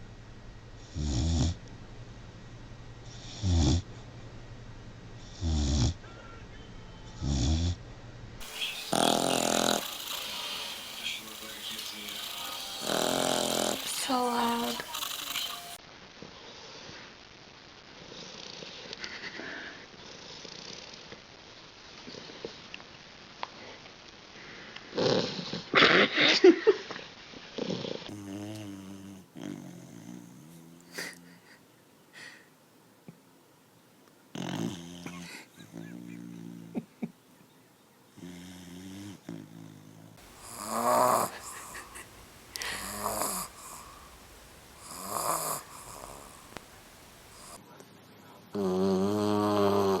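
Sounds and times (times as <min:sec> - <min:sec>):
puppy snoring and snuffling: 0:00.8 - 0:01.6, 0:03.0 - 0:03.9, 0:05.2 - 0:06.0, 0:07.2 - 0:07.8, 0:08.4 - 0:15.8, 0:24.9 - 0:25.8, 0:27.6 - 0:31.4, 0:34.3 - 0:36.9, 0:38.2 - 0:47.6, 0:48.5 - 0:50.0
whistling snore: 0:08.4 - 0:15.8, 0:40.3 - 0:47.6.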